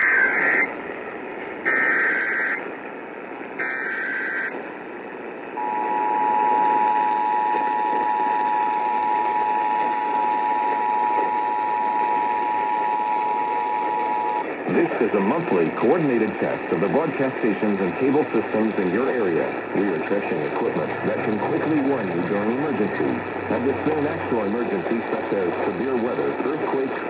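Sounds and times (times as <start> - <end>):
warbling data bursts: 0.0 - 0.8, 1.7 - 2.6
radio hiss: 0.0 - 27.0.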